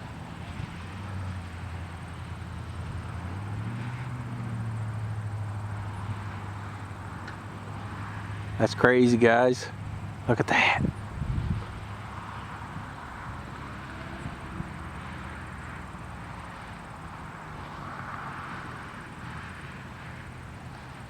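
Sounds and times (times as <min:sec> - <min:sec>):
low engine hum: 0:00.0 - 0:21.0
broad rushing noise: 0:04.8 - 0:21.0.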